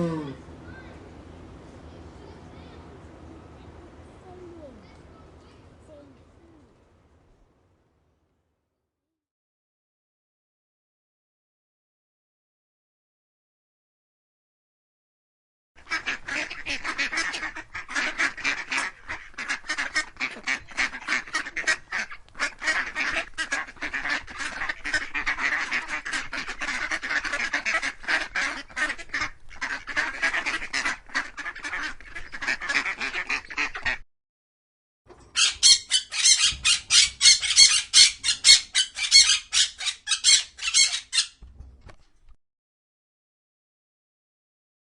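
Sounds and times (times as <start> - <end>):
waterfowl honking and quacking: 15.8 - 34.0, 35.4 - 41.4
rapid high sharp bird calls: 35.4 - 41.4.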